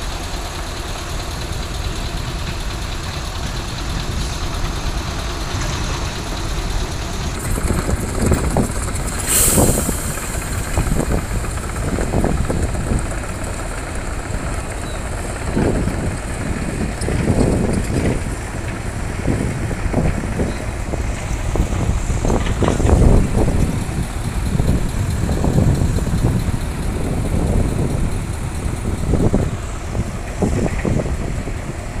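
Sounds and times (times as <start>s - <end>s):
heavy diesel machinery running: 0.0s - 32.0s
short hiss: 9.1s - 11.4s.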